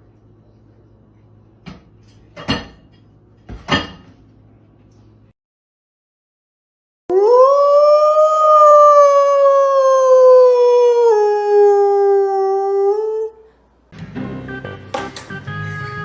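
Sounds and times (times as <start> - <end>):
dog howling: 7.1 - 13.5.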